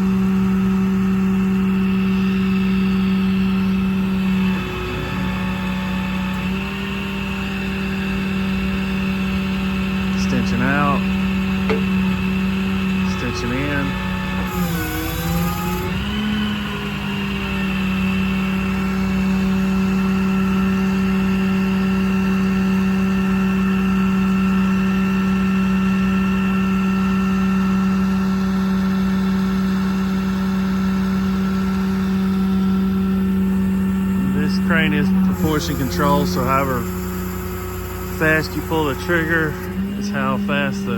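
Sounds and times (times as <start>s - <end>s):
hydraulic crane droning hum: 0.0s - 40.9s.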